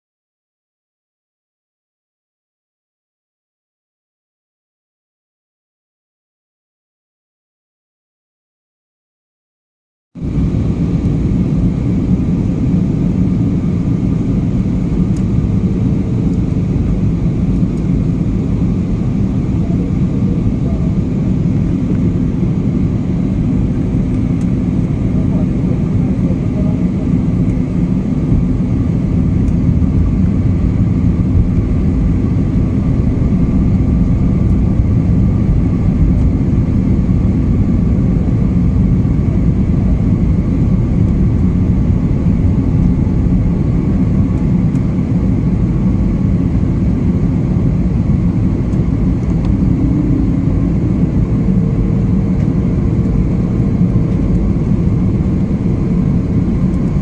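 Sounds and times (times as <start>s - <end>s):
faint steady whines: 10.2s - 57.0s
jet engine rumble: 10.2s - 57.0s.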